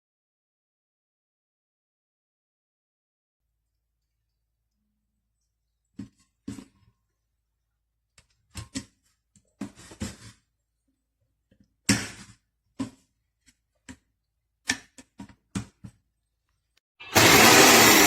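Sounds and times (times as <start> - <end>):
blender clunk: 17.0 - 18.0.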